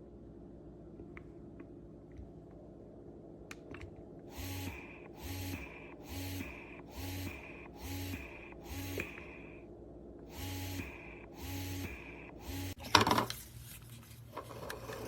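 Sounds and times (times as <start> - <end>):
breast pump motor whirring: 4.3 - 9.6, 10.3 - 12.8.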